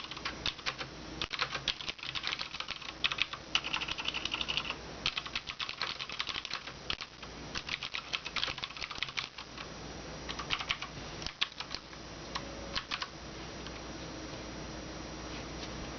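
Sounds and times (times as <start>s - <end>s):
clicky keyboard typing: 0.0s - 9.7s, 10.3s - 13.1s.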